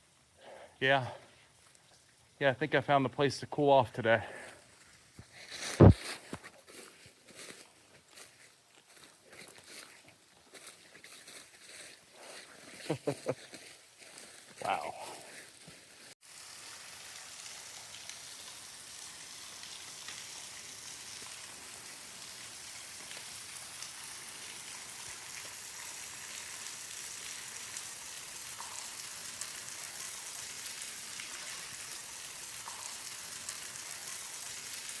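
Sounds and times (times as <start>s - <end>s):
small waterfall splashing: 16.2s - 35.0s.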